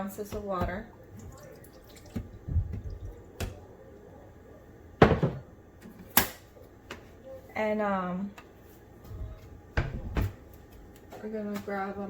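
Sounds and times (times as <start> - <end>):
water pouring into reservoir: 1.0 - 3.4.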